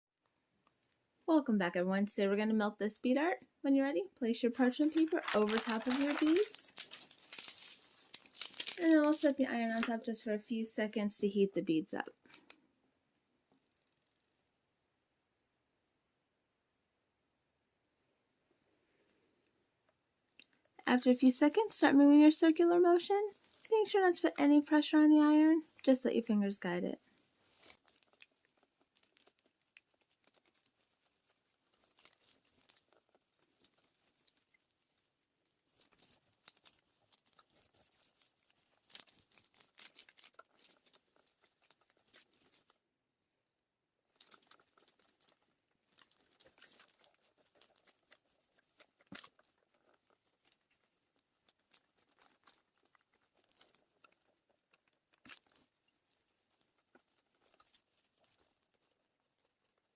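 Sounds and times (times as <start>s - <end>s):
small clicks and crinkles: 4.6s - 10.0s, 12.0s - 12.6s, 23.0s - 24.5s, 27.0s - 42.8s, 44.1s - 59.9s.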